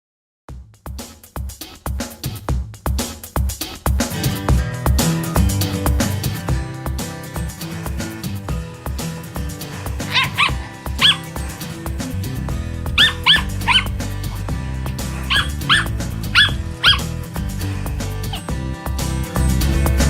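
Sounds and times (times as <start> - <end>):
background music: 0.9 - 20.0
small dog yapping: 9.6 - 11.6, 13.0 - 14.1, 15.2 - 17.1.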